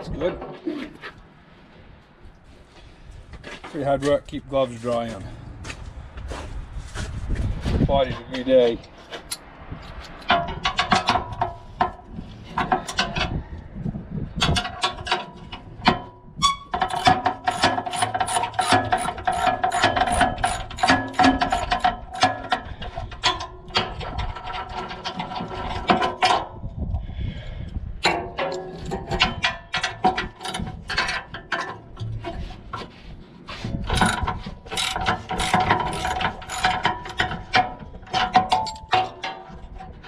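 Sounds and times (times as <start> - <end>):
ratchet wrench clicking: 34.0 - 36.8.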